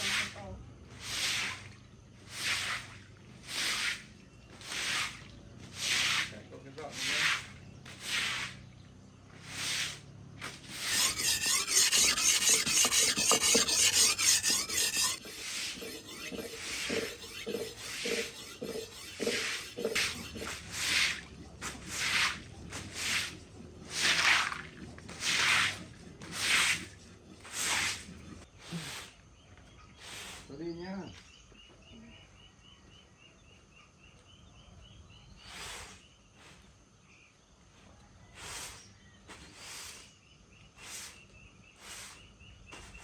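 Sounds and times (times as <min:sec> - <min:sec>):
rasping rubbing strokes: 0:02.3 - 0:08.6, 0:09.4 - 0:29.2.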